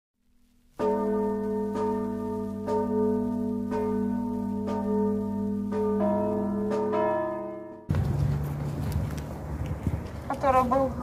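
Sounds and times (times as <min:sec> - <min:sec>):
church bell ringing: 0:00.8 - 0:08.3.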